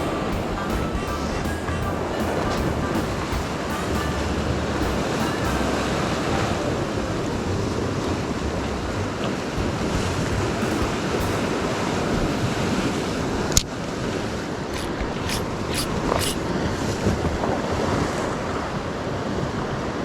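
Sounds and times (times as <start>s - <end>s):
sharp click: 14.7s - 16.4s.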